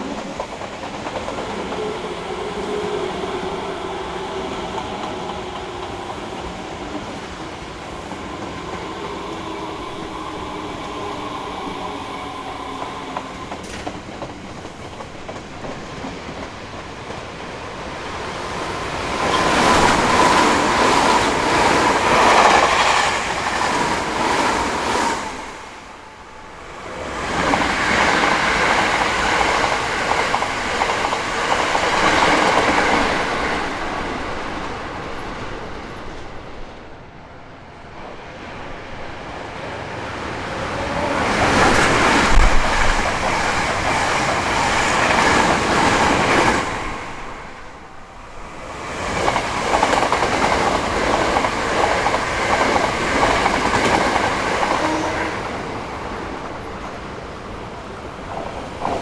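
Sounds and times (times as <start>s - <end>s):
train wheels clattering: 0.0s - 25.5s, 27.0s - 36.6s, 48.7s - 59.0s.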